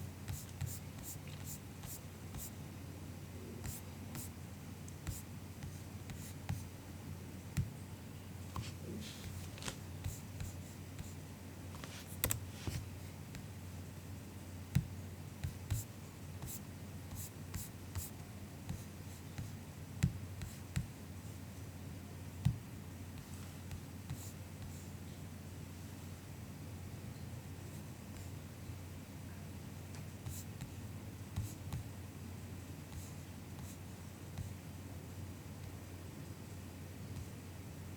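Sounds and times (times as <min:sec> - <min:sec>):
faint low hum: 0:00.0 - 0:37.9
soft keyboard keystrokes: 0:11.8 - 0:12.8.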